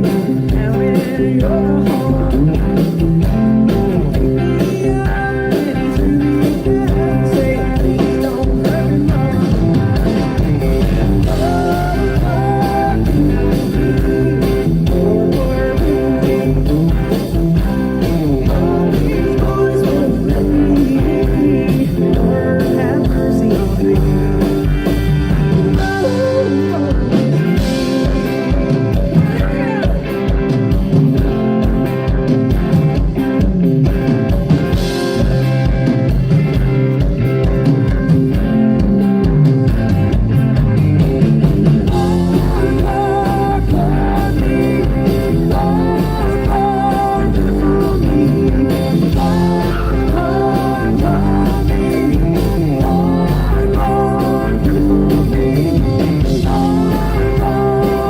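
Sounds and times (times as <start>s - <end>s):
person singing: 0.0s - 2.9s, 3.5s - 10.4s, 11.2s - 30.6s, 41.9s - 58.0s
live country rock band: 0.0s - 58.0s.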